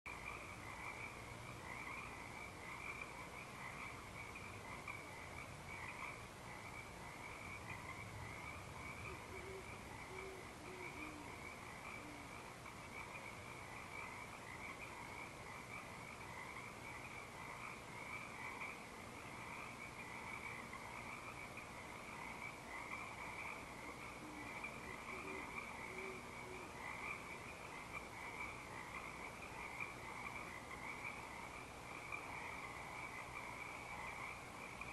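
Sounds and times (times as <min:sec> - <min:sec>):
frogs calling: 0:00.1 - 0:34.9
owl low hoots: 0:08.9 - 0:12.5, 0:23.8 - 0:27.4.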